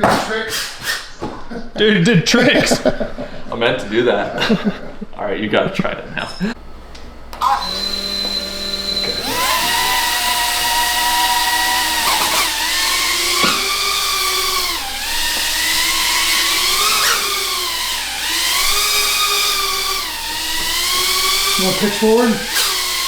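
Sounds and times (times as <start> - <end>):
drone propellers whining: 6.5 - 23.0.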